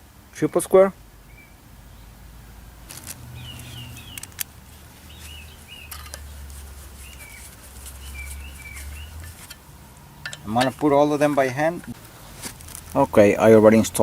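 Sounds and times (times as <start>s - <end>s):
low steady hum: 0.0s - 14.0s
small bird chirping: 2.9s - 9.6s
metallic clicks of tools: 5.9s - 6.3s, 10.2s - 10.8s.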